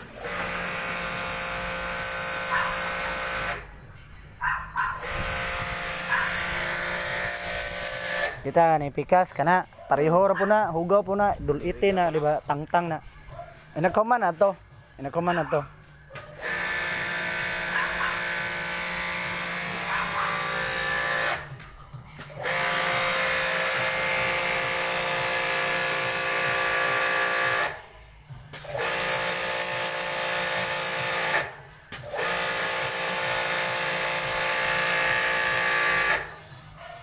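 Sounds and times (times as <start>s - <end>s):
electric power tool motor whining: 0.0s - 3.7s, 5.0s - 8.4s, 16.2s - 21.6s, 22.2s - 27.9s, 28.5s - 36.4s.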